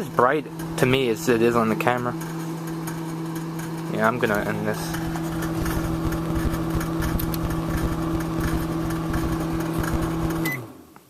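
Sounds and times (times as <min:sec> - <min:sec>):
microwave oven humming: 0:00.0 - 0:11.0
microwave beep: 0:05.4 - 0:10.8.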